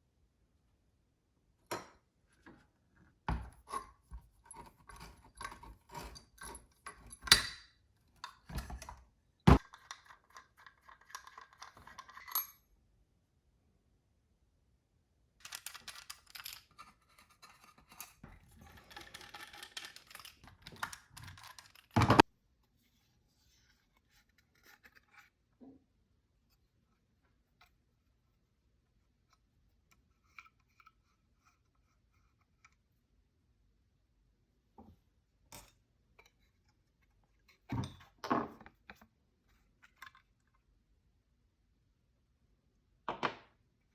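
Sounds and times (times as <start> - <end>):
metal parts scraping: 15.4 - 22.2
small metal parts clinking: 15.4 - 22.2.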